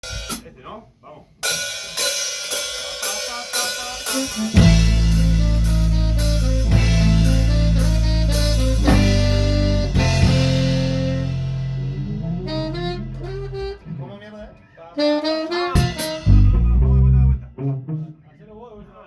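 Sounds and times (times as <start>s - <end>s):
drum kit beat: 0.0s - 0.6s, 1.4s - 14.0s, 15.0s - 18.1s
ska band playing: 1.4s - 14.2s, 15.0s - 18.2s
guitar: 4.1s - 14.2s, 15.0s - 18.2s.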